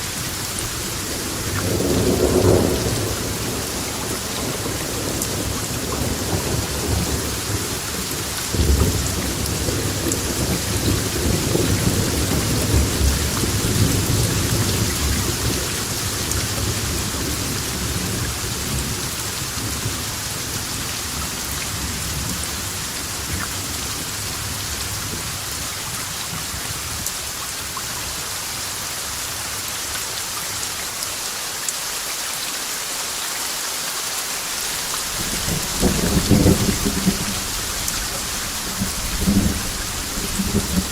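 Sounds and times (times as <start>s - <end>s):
steady rain hissing: 0.0s - 40.9s
rumble of thunder: 0.7s - 25.7s, 35.1s - 40.9s.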